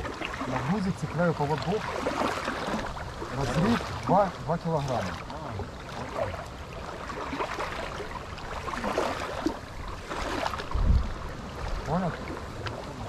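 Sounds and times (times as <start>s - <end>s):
water lapping: 0.0s - 13.0s
wind: 0.0s - 13.0s.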